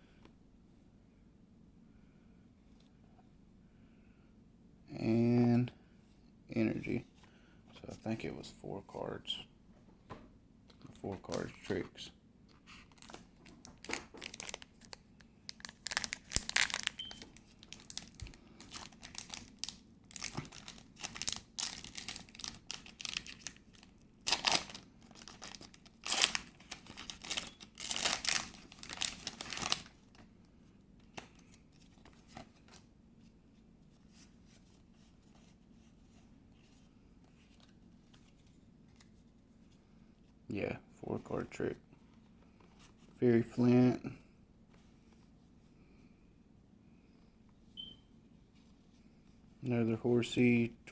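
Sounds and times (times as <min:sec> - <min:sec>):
foil wrapper tearing and crinkling: 0:12.9 - 0:29.9.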